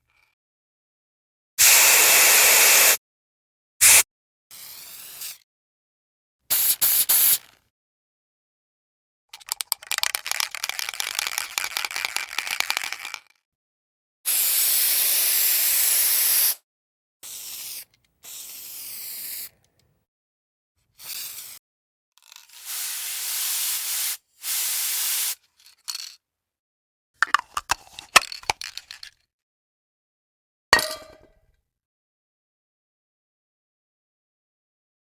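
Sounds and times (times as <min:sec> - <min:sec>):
spray paint can hissing: 0:01.6 - 0:03.0, 0:03.8 - 0:04.0, 0:06.5 - 0:07.5, 0:09.4 - 0:13.2, 0:14.3 - 0:16.6, 0:17.2 - 0:19.5, 0:22.4 - 0:25.4
sharp clicks and clinks: 0:09.4 - 0:13.2, 0:27.2 - 0:29.2.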